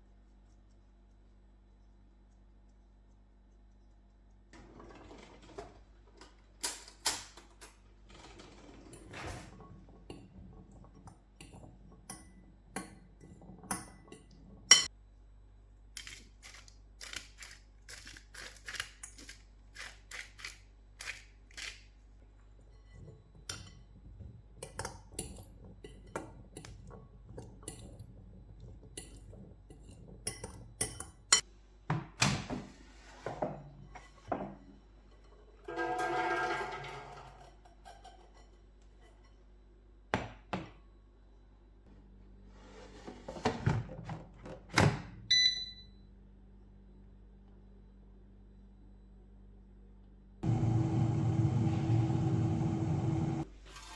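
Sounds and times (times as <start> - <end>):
dishes and utensils clinking: 6.6 - 14.9, 24.6 - 31.5, 34.0 - 39.4.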